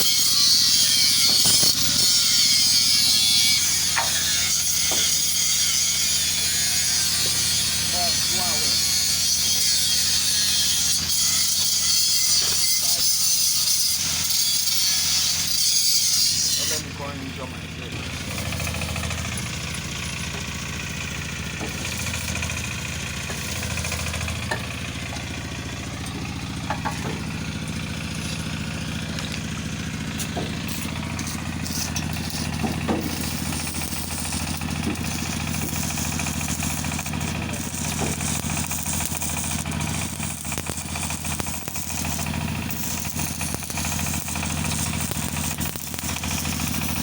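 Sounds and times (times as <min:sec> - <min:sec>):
engine idling: 0:16.8 - 0:47.0
hissing crackle: 0:30.2 - 0:47.0.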